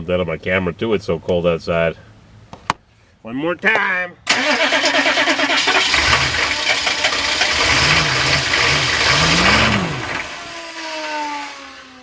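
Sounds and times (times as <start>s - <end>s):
diesel engine cranking and starting: 4.3s - 12.0s.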